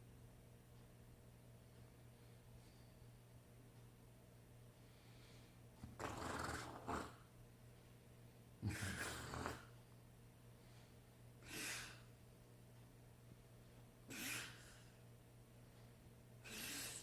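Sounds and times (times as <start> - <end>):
man snoring: 6.0 - 7.2, 8.6 - 9.7.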